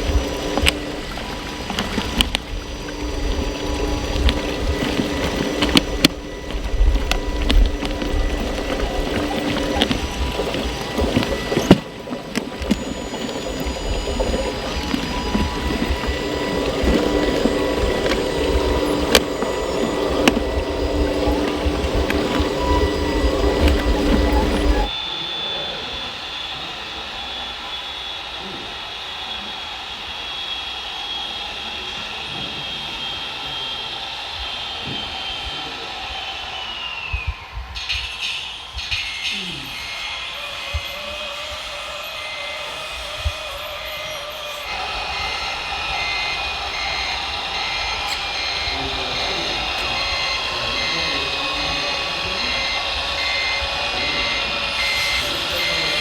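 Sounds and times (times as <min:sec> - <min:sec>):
grainy mechanical hiss: 0:00.0 - 0:25.9, 0:38.0 - 0:56.0
electric motor whine: 0:00.0 - 0:56.0
model vehicle drive running: 0:00.0 - 0:56.0
reversing beeper: 0:00.0 - 0:56.0.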